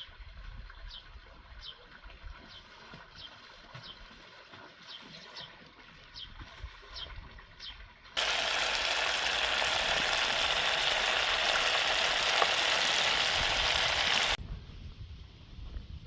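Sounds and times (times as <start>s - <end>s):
food sizzling in a pan: 8.2s - 14.4s.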